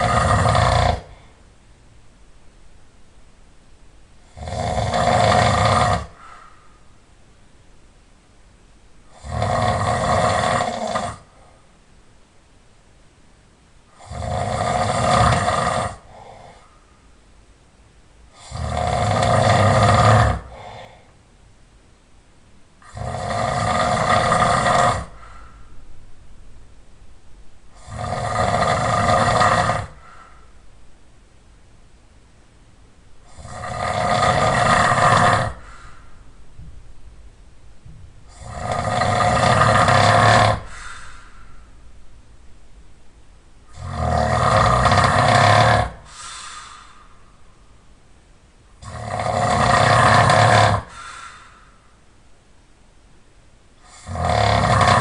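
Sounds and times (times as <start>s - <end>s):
person snoring loudly: 0.0s - 1.4s, 4.2s - 6.5s, 9.1s - 11.6s, 13.9s - 16.8s, 18.3s - 21.1s, 22.8s - 25.6s, 27.7s - 30.4s, 33.2s - 36.0s, 38.3s - 41.5s, 43.7s - 47.0s, 48.8s - 51.6s, 53.8s - 55.0s
faint breath out: 6.1s - 7.0s, 25.1s - 25.9s, 29.9s - 30.6s, 35.6s - 36.4s, 40.6s - 41.8s, 46.0s - 47.6s, 50.9s - 52.0s.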